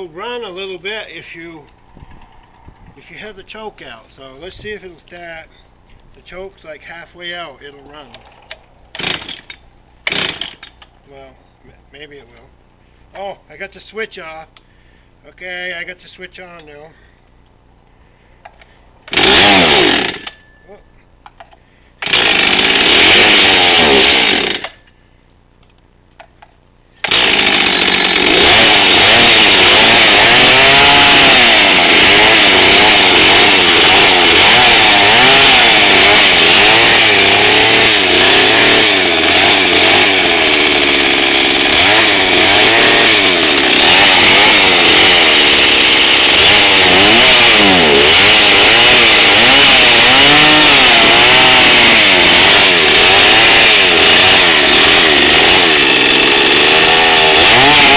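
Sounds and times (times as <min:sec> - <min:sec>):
chainsaw running and revving: 0:09.0 - 0:09.4, 0:10.1 - 0:10.6, 0:19.1 - 0:20.3, 0:22.0 - 0:24.8, 0:27.0 - 0:57.9.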